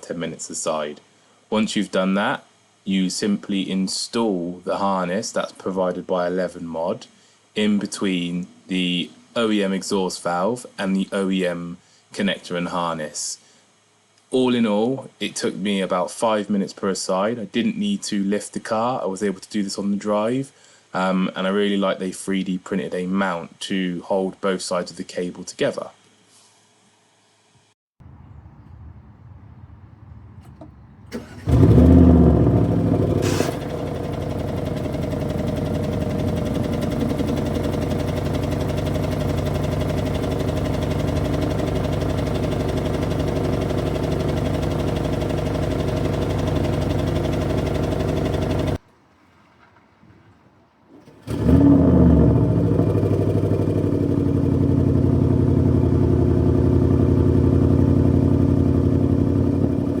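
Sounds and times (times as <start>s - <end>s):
car engine starting and idling: 28.0s - 48.8s, 50.9s - 60.0s.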